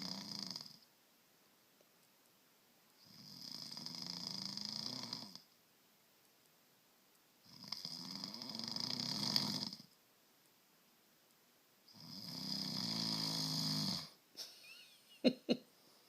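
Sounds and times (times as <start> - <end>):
man snoring: 0.0 - 0.8, 3.0 - 5.4, 7.5 - 9.9, 11.9 - 14.2.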